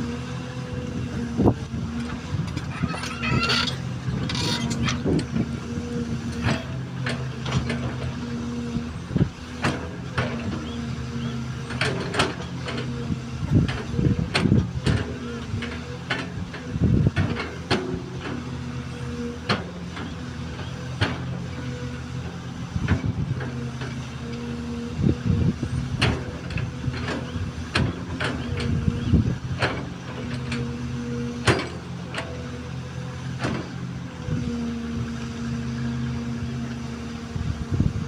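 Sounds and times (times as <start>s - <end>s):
excavator diesel engine running: 0.0s - 38.0s.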